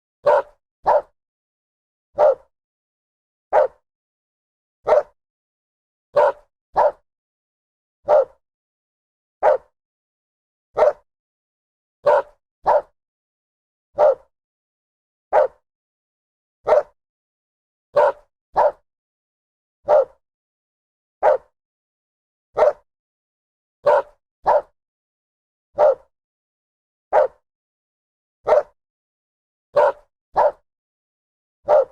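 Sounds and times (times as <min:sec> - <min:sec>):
dog barking: 0:00.2 - 0:01.2, 0:02.2 - 0:02.5, 0:03.5 - 0:03.8, 0:04.8 - 0:05.2, 0:06.1 - 0:07.0, 0:08.0 - 0:08.4, 0:09.4 - 0:09.7, 0:10.8 - 0:11.1, 0:12.0 - 0:13.0, 0:14.0 - 0:14.3, 0:15.3 - 0:15.6, 0:16.6 - 0:17.0, 0:17.9 - 0:18.8, 0:19.8 - 0:20.2, 0:21.2 - 0:21.5, 0:22.6 - 0:22.9, 0:23.8 - 0:24.8, 0:25.8 - 0:26.1, 0:27.1 - 0:27.4, 0:28.4 - 0:28.8, 0:29.7 - 0:30.6, 0:31.6 - 0:31.9.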